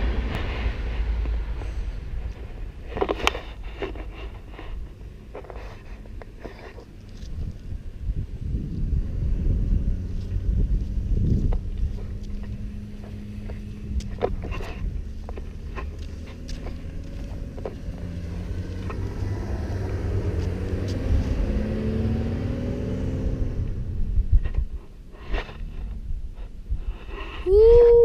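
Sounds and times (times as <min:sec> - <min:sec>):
car engine revving under load: 0:07.4 - 0:24.4.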